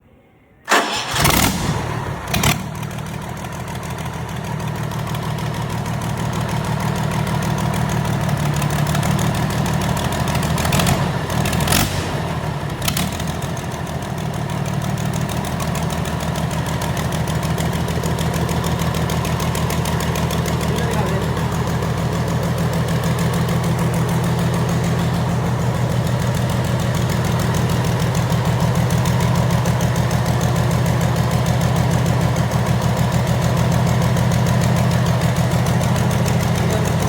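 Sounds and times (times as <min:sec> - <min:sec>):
engine starting bangs: 0:00.6 - 0:02.6
diesel engine running: 0:00.7 - 0:37.0.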